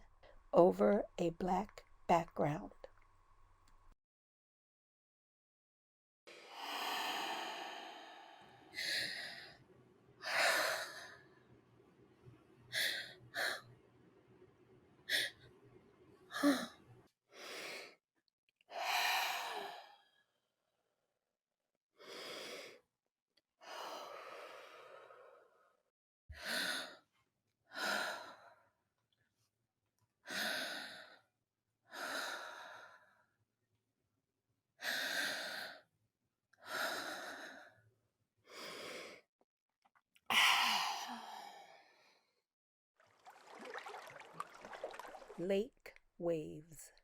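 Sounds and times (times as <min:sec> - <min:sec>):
person breathing deeply: 0:06.4 - 0:09.6.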